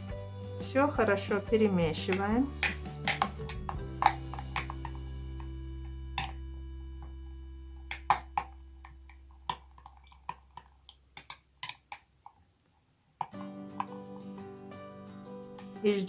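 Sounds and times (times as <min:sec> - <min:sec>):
background music chord: 0:00.0 - 0:08.9, 0:13.5 - 0:16.0.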